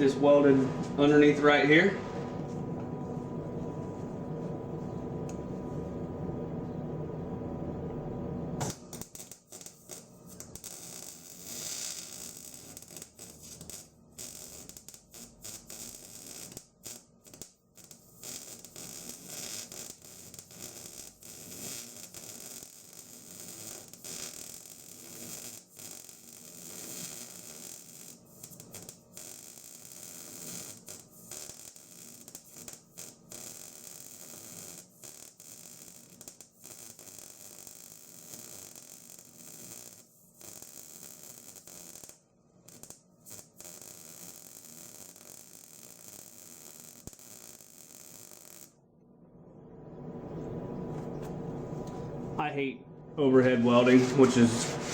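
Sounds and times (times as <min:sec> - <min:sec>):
welding arc crackling and sizzling: 0:00.0 - 0:01.9, 0:08.6 - 0:48.8
steady hum: 0:00.0 - 0:09.0, 0:49.0 - 0:54.9.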